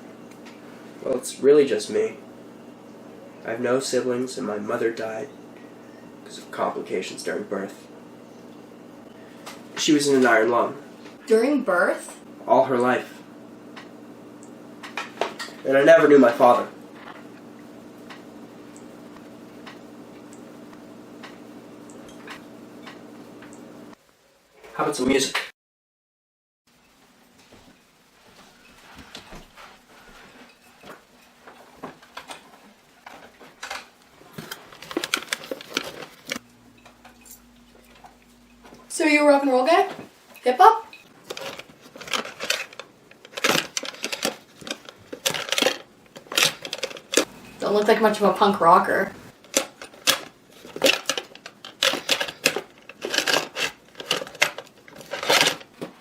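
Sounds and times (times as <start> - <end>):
small hard objects clattering: 49.5 - 56.0.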